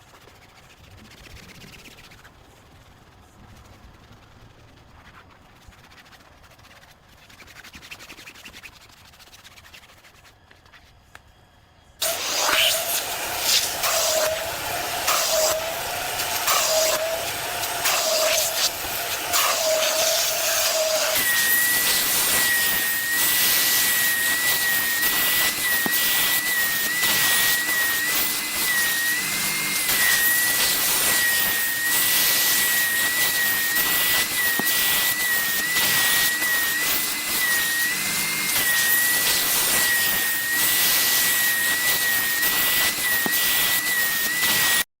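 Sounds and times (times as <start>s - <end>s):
air rushing through nozzle: 12.0s - 44.8s
vacuum motor whine: 12.0s - 44.9s.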